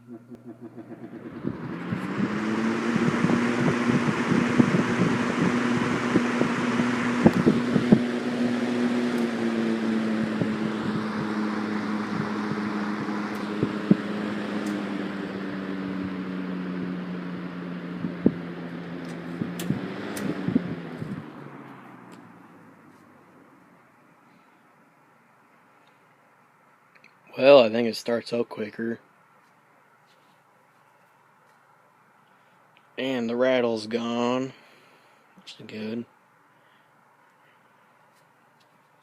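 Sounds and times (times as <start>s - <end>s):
box fan motor hum: 0.0s - 24.2s
fan air rushing: 0.0s - 39.0s.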